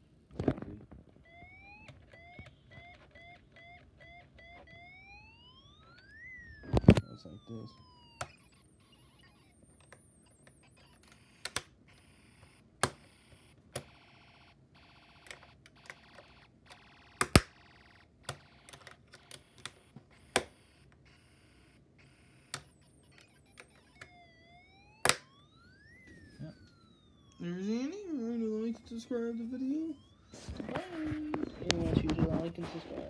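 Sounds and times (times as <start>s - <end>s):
brief electronic tones: 22.6s - 33.0s.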